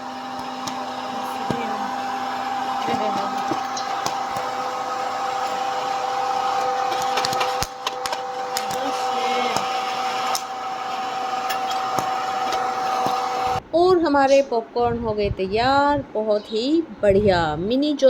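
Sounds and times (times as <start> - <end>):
popcorn maker motor hum: 0.0 - 13.6
popcorn kernels popping: 0.3 - 1.8, 2.8 - 4.8, 6.4 - 10.6, 11.4 - 13.3.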